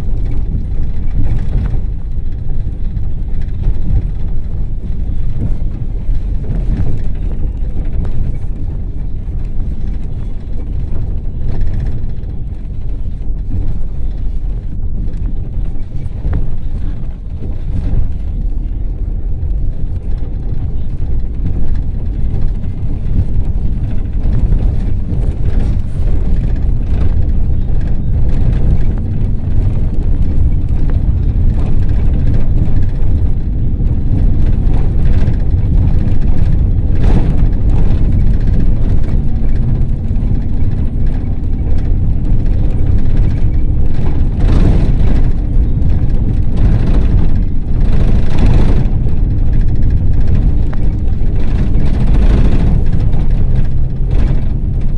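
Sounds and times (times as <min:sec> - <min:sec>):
road noise bursts and rattling: 0:00.0 - 0:54.9
vehicle engine and road rumble: 0:00.0 - 0:54.9.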